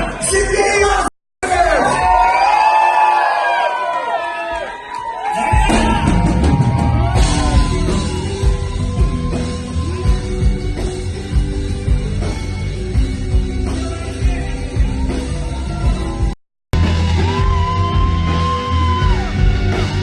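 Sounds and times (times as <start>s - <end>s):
pop-rock band music with drums: 5.4s - 20.0s.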